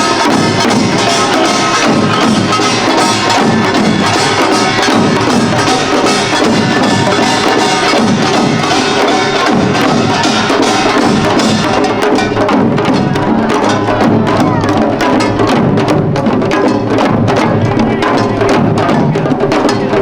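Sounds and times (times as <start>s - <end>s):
small gongs clanging: 0.0s - 15.6s
drums playing: 0.0s - 20.0s.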